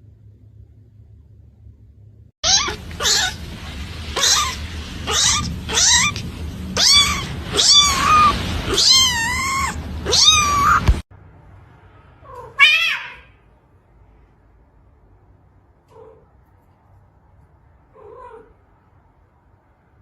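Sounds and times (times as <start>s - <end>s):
cat meowing: 2.4s - 11.0s, 12.2s - 13.4s, 18.0s - 18.6s.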